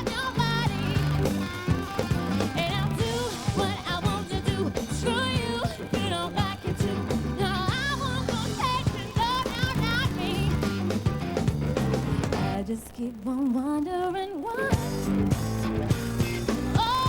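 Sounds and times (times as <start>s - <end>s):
woman singing: 0.0s - 10.8s, 12.5s - 15.0s, 16.6s - 17.0s
live pop band: 0.0s - 12.7s, 14.5s - 17.0s.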